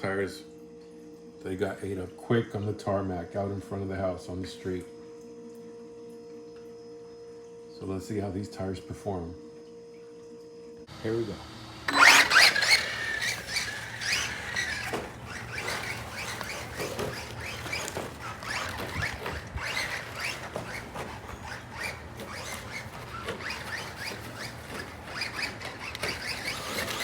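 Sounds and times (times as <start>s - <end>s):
rc car motor whining: 11.0s - 27.0s.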